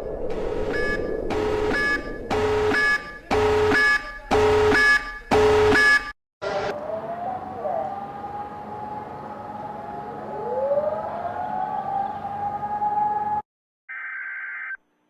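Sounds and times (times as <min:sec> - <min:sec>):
pulsing electronic alarm beeps: 0:00.0 - 0:06.2.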